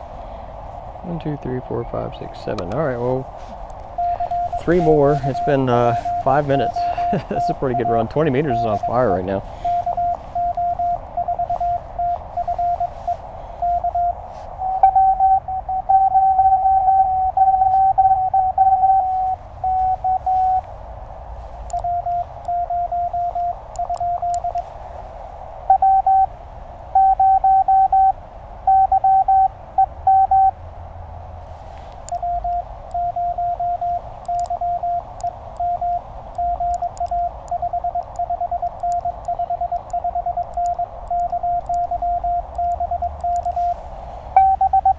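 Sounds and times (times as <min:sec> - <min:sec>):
radio band noise hiss: 0:00.0 - 0:15.6, 0:19.0 - 0:25.7, 0:31.4 - 0:44.9
higher morse sidetone: 0:01.1 - 0:20.7, 0:21.7 - 0:24.7, 0:25.7 - 0:26.3, 0:26.9 - 0:30.6, 0:32.1 - 0:44.9
morse code tones: 0:01.1 - 0:20.7, 0:21.5 - 0:24.7, 0:25.7 - 0:26.3, 0:26.9 - 0:30.6, 0:32.0 - 0:44.9.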